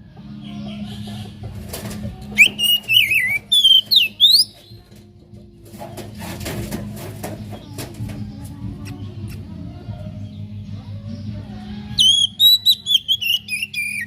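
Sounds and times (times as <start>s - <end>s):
bird singing whistled phrases: 2.4s - 4.6s, 12.0s - 14.0s.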